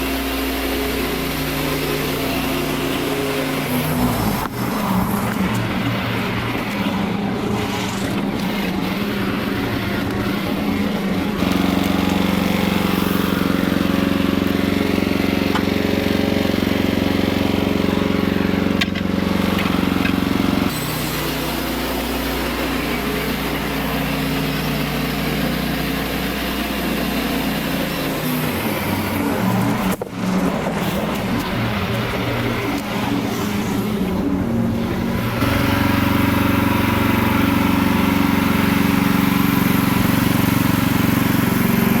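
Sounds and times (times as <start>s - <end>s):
sawmill engine running: 0.0s - 42.0s.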